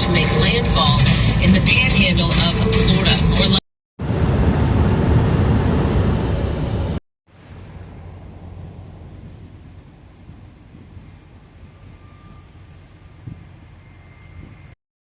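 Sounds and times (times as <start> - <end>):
loud low rushing noise: 4.0 - 7.0
outdoor hush: 7.3 - 14.8
insect chirping: 7.4 - 14.8.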